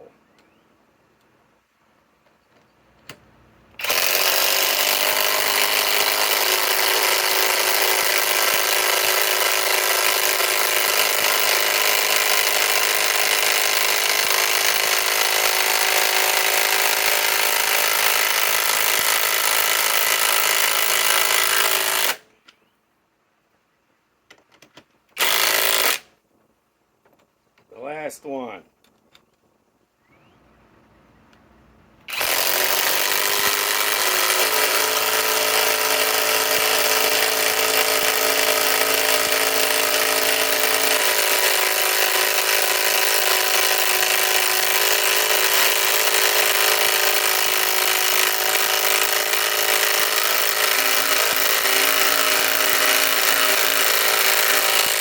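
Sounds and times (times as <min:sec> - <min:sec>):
impact wrench hammering: 0:32.1 - 0:55.0.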